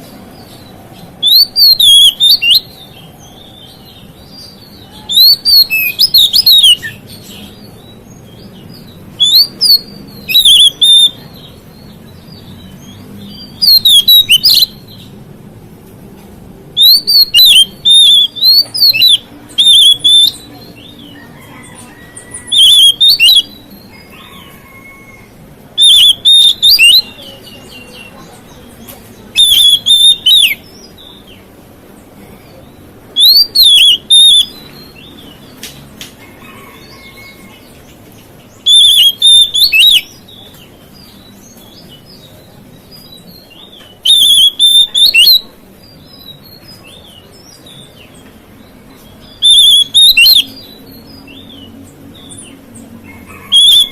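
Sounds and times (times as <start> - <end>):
bird singing whistled phrases: 1.2 - 2.7, 4.8 - 7.0, 9.2 - 11.2, 13.6 - 14.7, 16.8 - 20.5, 22.4 - 23.5, 25.8 - 27.2, 29.4 - 30.6, 33.2 - 34.7, 38.6 - 40.1, 43.9 - 45.5, 49.4 - 50.8.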